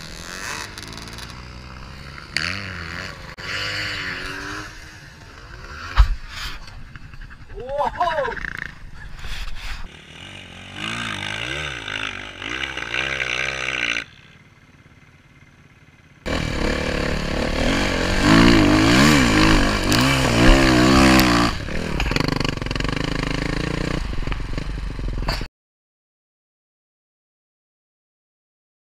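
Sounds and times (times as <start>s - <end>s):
motorcycle engine revving: 0.0s - 7.5s, 9.6s - 25.5s.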